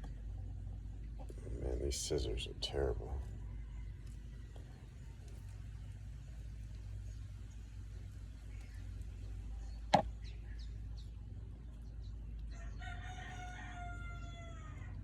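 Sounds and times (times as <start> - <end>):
rooster crowing: 3.2 - 4.8, 12.5 - 15.0.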